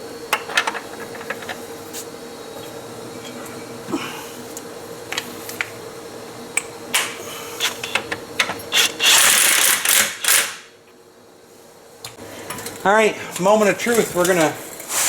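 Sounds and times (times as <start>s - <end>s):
faint steady hum: 0.0s - 9.8s.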